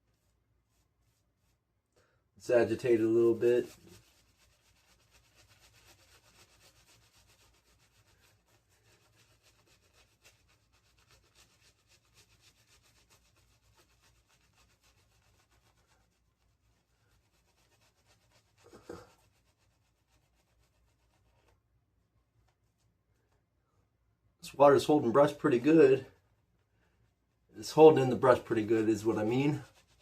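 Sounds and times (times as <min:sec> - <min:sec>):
shaving brush rubbing on stubble: 0:00.1 - 0:01.6, 0:02.5 - 0:21.6, 0:27.6 - 0:30.0.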